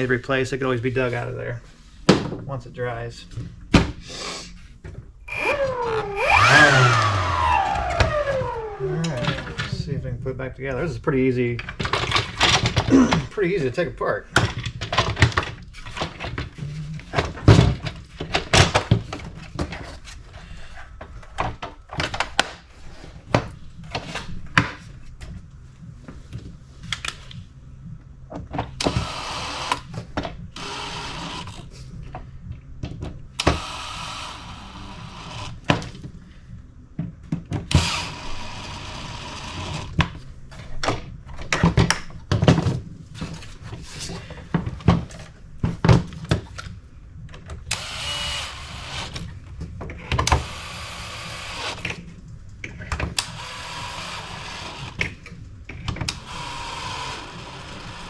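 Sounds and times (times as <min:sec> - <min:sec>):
plastic parts clicking and knocking: 0:11.6 - 0:13.3, 0:14.3 - 0:19.9, 0:21.0 - 0:22.6.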